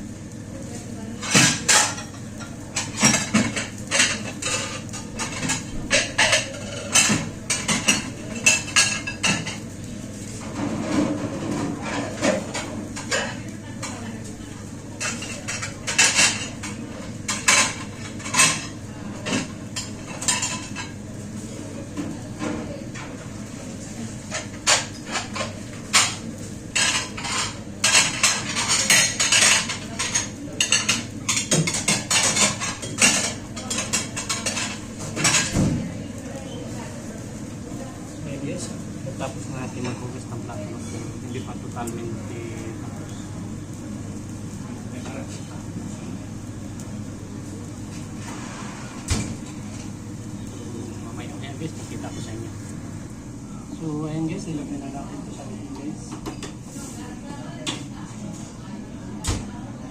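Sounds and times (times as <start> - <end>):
dishes clattering and clinking: 1.2 - 9.7, 10.4 - 14.0, 15.0 - 21.0, 24.2 - 36.5, 47.9 - 50.6, 55.7 - 56.7.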